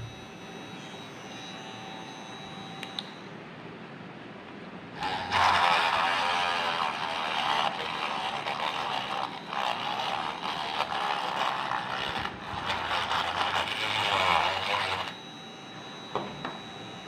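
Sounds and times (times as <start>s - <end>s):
mini drill motor whirring: 5.0s - 15.2s.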